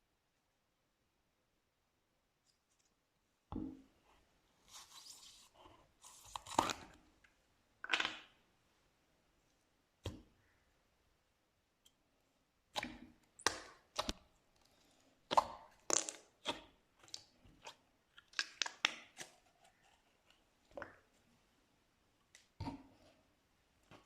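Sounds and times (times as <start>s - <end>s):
slime crackling and popping: 15.3s - 17.2s.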